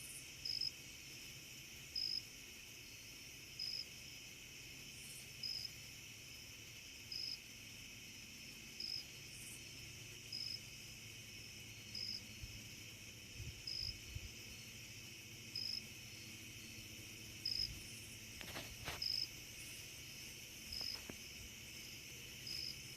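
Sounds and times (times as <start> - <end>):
insect chirping in high pulses: 0.0 - 22.9
insect chorus: 0.0 - 22.9.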